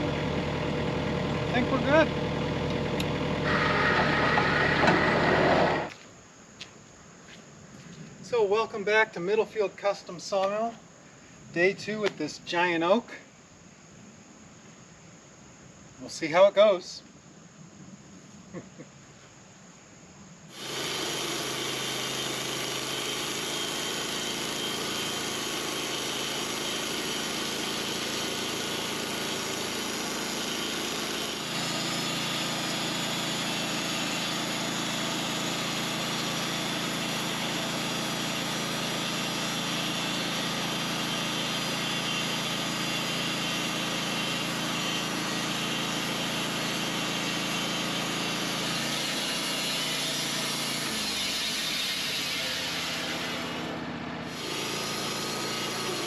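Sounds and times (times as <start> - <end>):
sawmill engine running: 0.0 - 6.0, 20.5 - 56.0.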